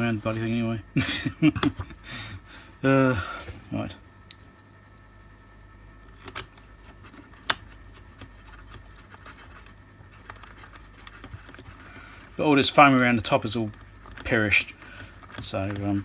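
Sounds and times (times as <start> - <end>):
plastic housing clicking and scraping: 13.7 - 16.0.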